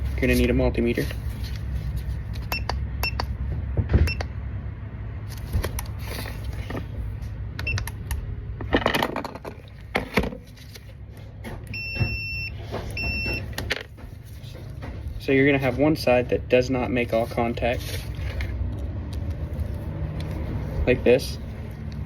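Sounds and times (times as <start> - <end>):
continuity tester beeping: 11.7 - 13.6.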